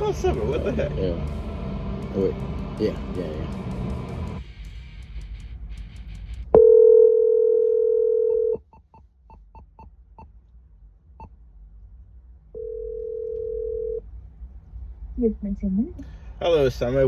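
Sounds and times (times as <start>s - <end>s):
phone ringback tone: 6.6s - 8.6s, 12.6s - 14.0s.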